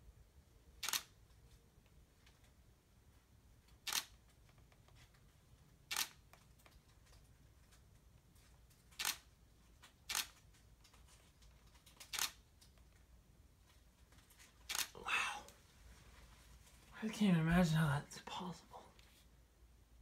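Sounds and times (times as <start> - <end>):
faint low hum: 0.0 - 20.0
camera shutter clicking: 0.8 - 1.1, 3.8 - 4.1, 5.9 - 6.2, 9.0 - 9.3, 10.1 - 10.4, 12.0 - 12.4, 14.7 - 14.9.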